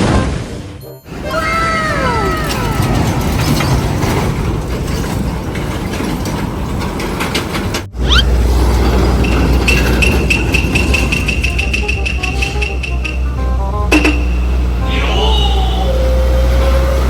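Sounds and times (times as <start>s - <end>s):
heavy road traffic rumble: 1.1s - 17.0s
tone sliding down in pitch: 11.5s - 17.0s.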